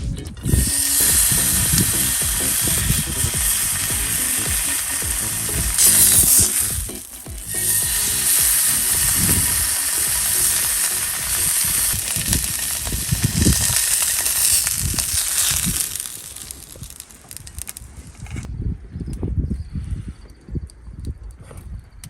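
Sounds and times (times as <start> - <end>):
food sizzling in a hot pan: 0.4 - 17.9.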